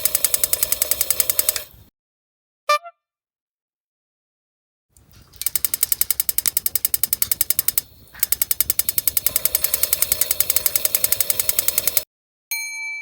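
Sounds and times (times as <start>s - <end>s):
rapid mechanical clicking: 0.0s - 1.9s, 5.0s - 12.1s.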